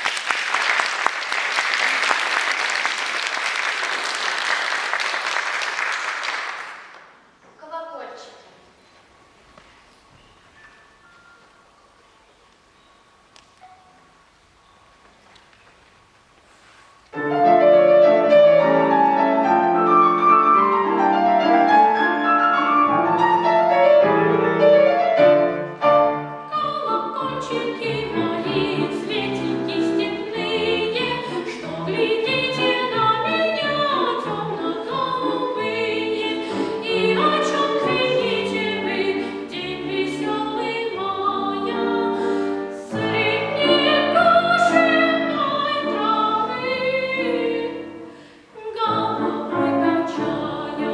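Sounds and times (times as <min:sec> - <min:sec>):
piano chords: 0:17.1 - 0:48.1
person singing with vibrato: 0:26.4 - 0:50.9.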